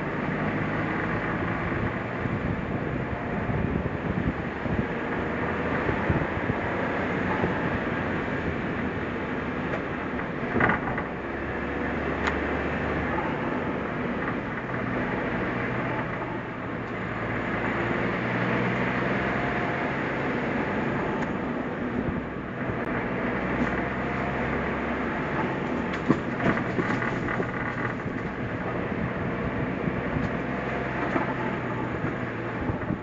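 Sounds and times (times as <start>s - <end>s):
car engine and tyre rumble: 0.0s - 33.0s
car bump: 25.4s - 28.4s.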